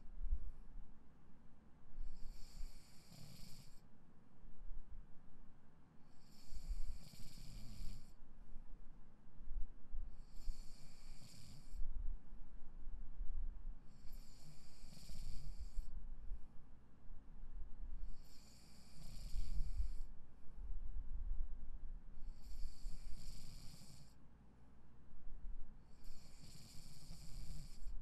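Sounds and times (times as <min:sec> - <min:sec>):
person snoring: 0:02.2 - 0:03.8, 0:06.2 - 0:08.1, 0:10.2 - 0:11.8, 0:14.0 - 0:15.9, 0:18.2 - 0:20.1, 0:22.3 - 0:24.1, 0:26.0 - 0:27.9.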